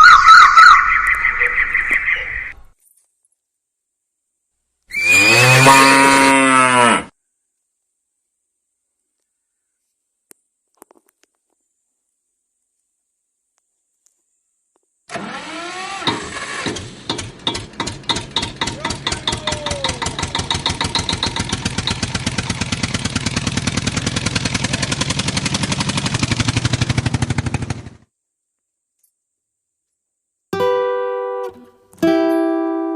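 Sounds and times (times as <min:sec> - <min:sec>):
tractor engine starting and running: 0:15.1 - 0:28.0.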